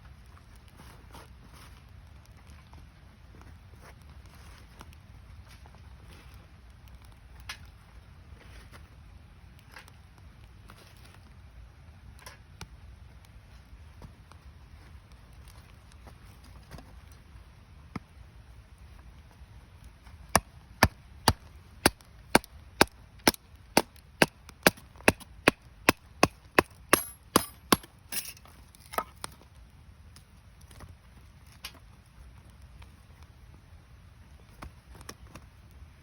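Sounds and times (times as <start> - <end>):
axe chopping firewood: 20.3 - 29.2.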